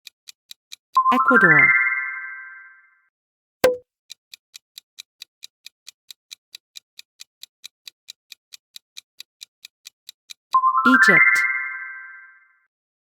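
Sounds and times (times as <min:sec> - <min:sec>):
clock-like ticking: 0:00.0 - 0:01.8, 0:03.6 - 0:11.5
sharp knock: 0:03.6 - 0:03.8.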